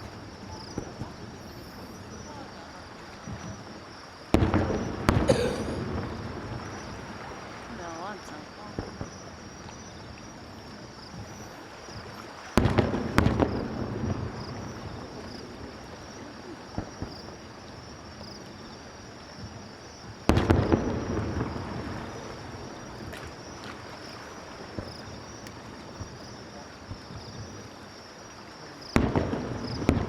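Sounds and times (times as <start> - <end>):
fireworks bursting with bangs: 0.0 - 9.9, 11.1 - 17.4, 19.4 - 23.9, 24.6 - 27.7, 28.8 - 30.0.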